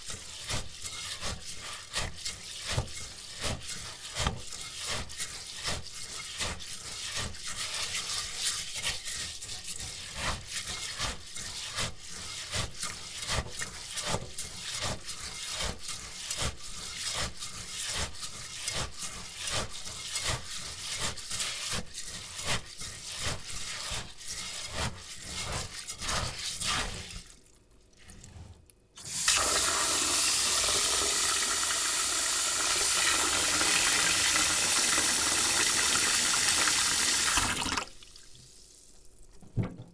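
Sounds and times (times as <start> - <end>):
rice being washed by hand: 0.0 - 39.0
water tap running: 29.0 - 38.2.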